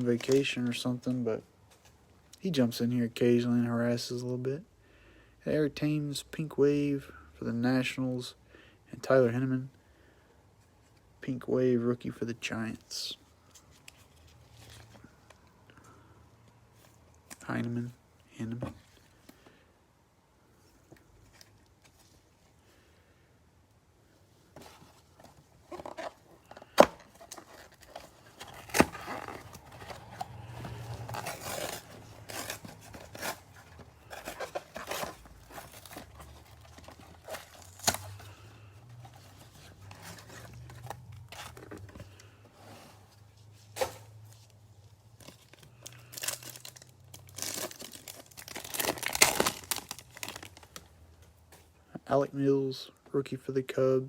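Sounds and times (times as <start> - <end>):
foil wrapper tearing and crinkling: 25.7 - 38.3, 45.2 - 50.9.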